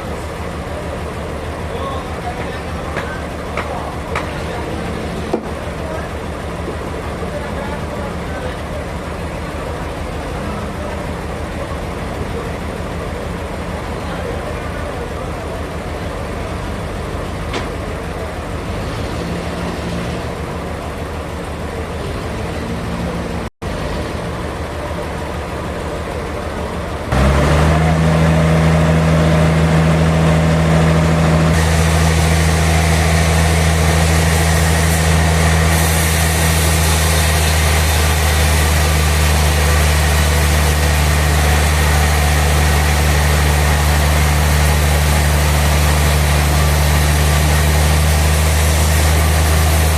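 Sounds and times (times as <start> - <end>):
low engine-like hum: 0.0 - 49.9
sawmill machinery running: 0.0 - 49.9.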